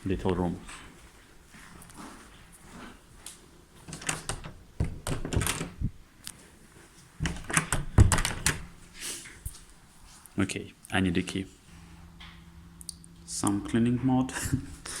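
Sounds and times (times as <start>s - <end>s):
door latch rattling clicks: 3.9s - 5.8s, 7.2s - 8.7s
heavy door thud: 3.9s - 5.8s, 7.2s - 8.7s.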